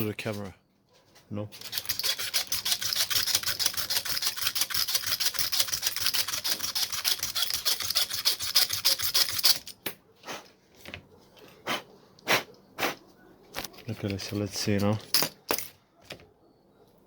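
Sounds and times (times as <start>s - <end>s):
hand file rasping plastic: 1.6s - 9.7s.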